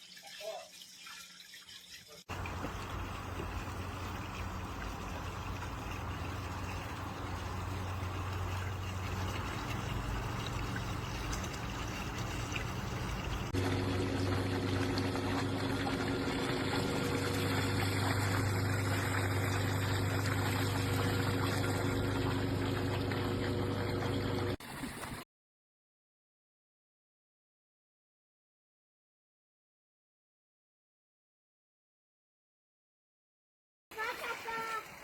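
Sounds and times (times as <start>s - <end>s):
pool filter pump hum: 0.0s - 25.2s
water pouring from fountain: 0.0s - 25.2s, 33.9s - 35.0s.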